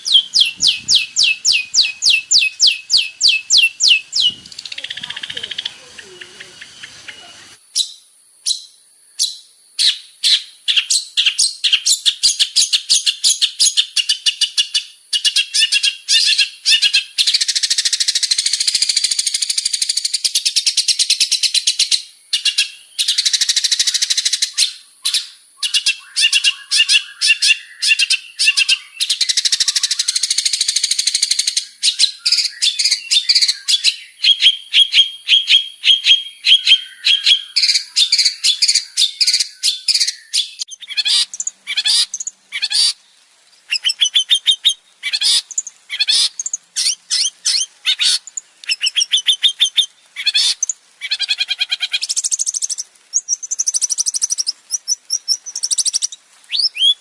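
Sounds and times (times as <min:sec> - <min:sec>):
shrike singing: 0:00.0 - 0:08.6.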